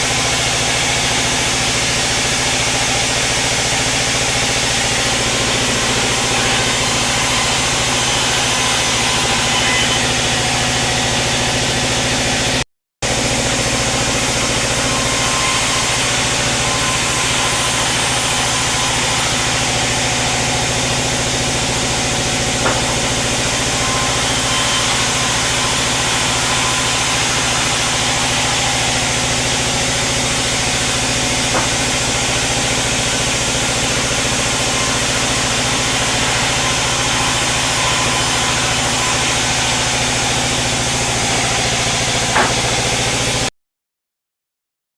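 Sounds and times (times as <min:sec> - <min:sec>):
sawmill machinery drone: 0:00.0 - 0:43.5.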